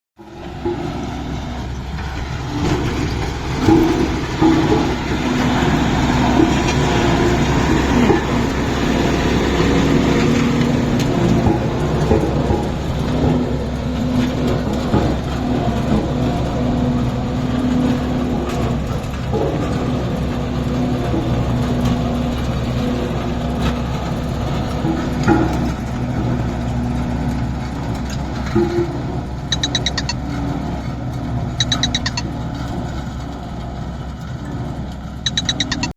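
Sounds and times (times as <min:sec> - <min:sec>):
diesel engine rumbling: 0:00.2 - 0:35.9.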